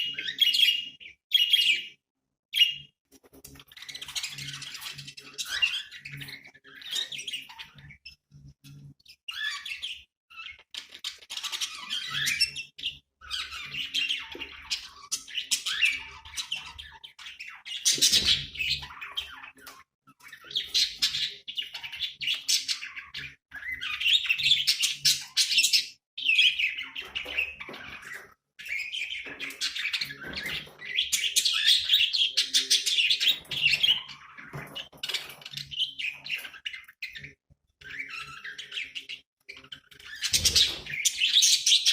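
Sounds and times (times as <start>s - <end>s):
budgerigars chattering: 9.3s - 41.9s.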